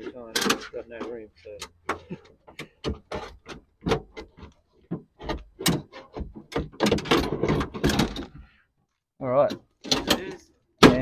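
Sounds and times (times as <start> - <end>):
knocks clicks and scraping in car door: 0.3 - 8.4.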